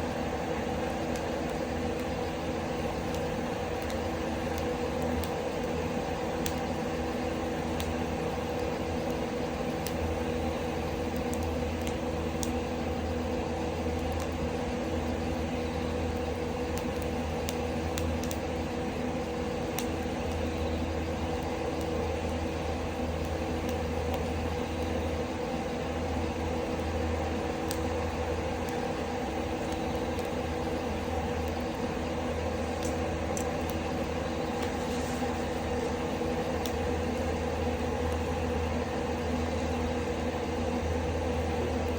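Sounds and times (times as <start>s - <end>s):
ventilation fan humming: 0.0s - 41.9s
firewood popping: 2.8s - 6.9s, 16.2s - 18.6s, 28.6s - 38.3s.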